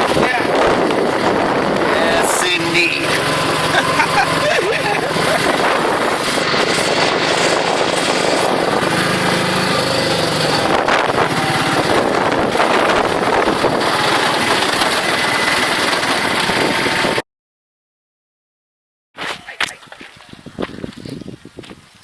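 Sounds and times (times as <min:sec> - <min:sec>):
auto rickshaw engine running: 0:00.0 - 0:17.2
wind and road noise: 0:00.0 - 0:17.2, 0:19.2 - 0:22.0.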